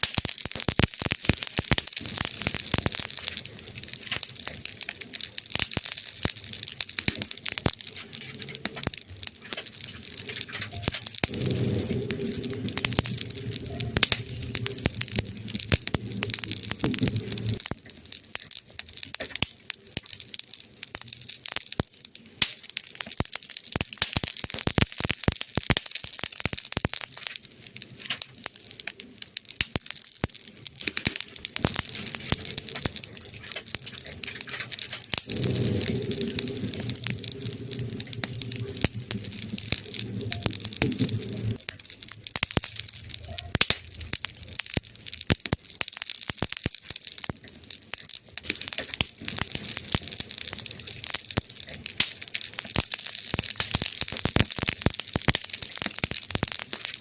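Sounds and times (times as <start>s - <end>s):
wood fire crackling: 0.0s - 57.0s
low drone: 10.8s - 17.6s, 35.1s - 41.6s.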